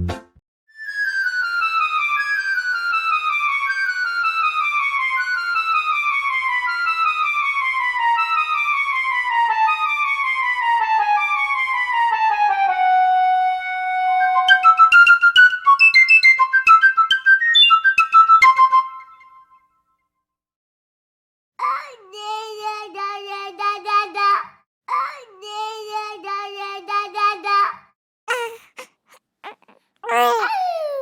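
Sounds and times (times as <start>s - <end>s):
playful woodwind music: 0.0s - 19.2s.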